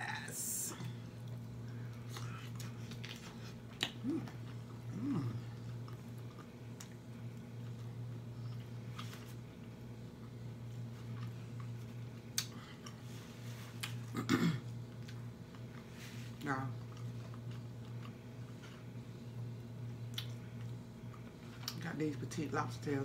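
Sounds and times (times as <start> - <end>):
steady low hum: 0.0 - 23.0
chewing and lip smacking: 1.2 - 14.1, 16.8 - 18.9, 19.9 - 21.8.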